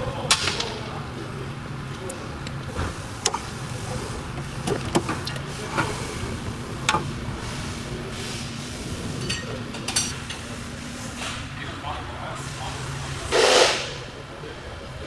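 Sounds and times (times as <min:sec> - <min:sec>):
steady low hum: 0:00.0 - 0:13.3
sharp clicks and knocks: 0:01.8 - 0:07.9.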